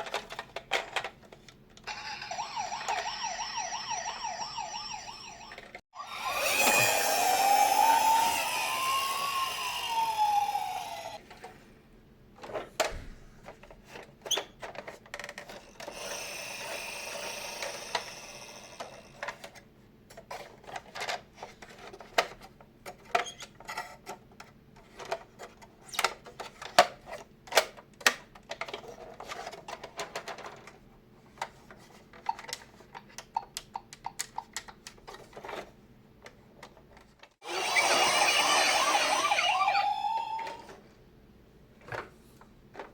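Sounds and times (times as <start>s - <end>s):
toy electronic siren: 1.9s - 11.2s, 15.9s - 19.1s, 37.4s - 40.8s.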